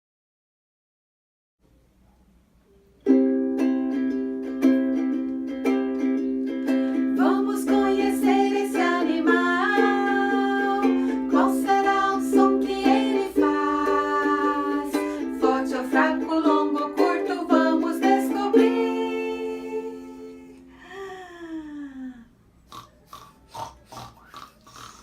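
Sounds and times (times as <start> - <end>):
person singing: 6.4 - 22.3.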